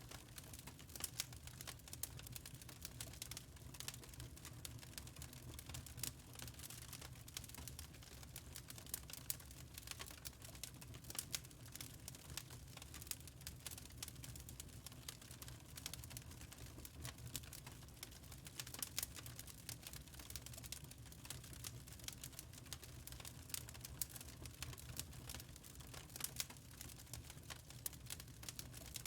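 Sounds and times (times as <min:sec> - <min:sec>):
logs crackling in fireplace: 0:00.0 - 0:29.0
low fire rumble: 0:00.0 - 0:29.0.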